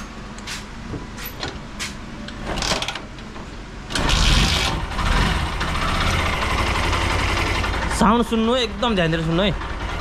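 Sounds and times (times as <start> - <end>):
motorcycle engine starting and running: 3.9 - 10.0.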